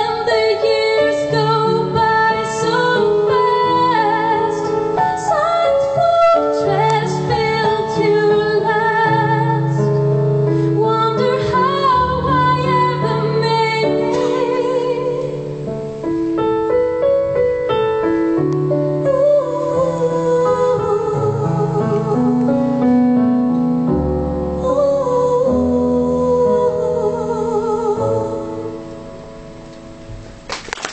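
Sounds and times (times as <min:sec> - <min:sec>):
woman singing with vibrato: 0:00.0 - 0:15.7, 0:18.9 - 0:22.8, 0:24.5 - 0:29.0
piano accompaniment: 0:00.0 - 0:30.9.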